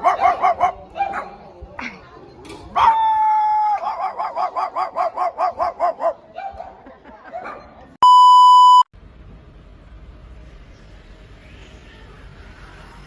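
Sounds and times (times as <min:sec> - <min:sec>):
electronic beep: 0:08.0 - 0:08.9.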